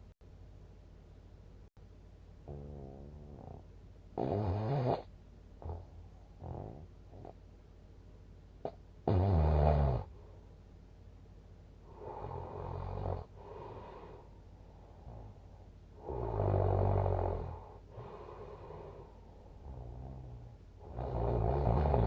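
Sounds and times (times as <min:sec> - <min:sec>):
person snoring: 0:02.5 - 0:03.6, 0:04.2 - 0:07.4, 0:09.0 - 0:10.1, 0:11.9 - 0:14.3, 0:14.9 - 0:22.0.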